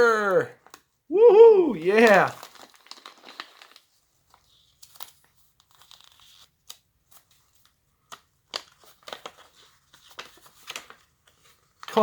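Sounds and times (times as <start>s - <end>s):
candy package crinkling and tearing: 1.7s - 12.0s.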